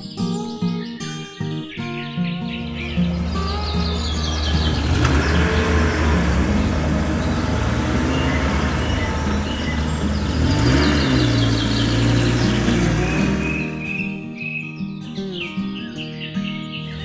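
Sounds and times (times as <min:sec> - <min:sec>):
faint bird chirps: 0:01.4 - 0:17.0
vehicle engine revving: 0:02.5 - 0:14.2.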